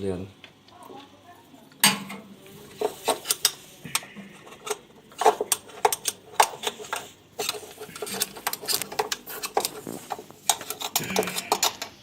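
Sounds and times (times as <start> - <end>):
light clicks and knocks of parts: 2.8 - 12.0.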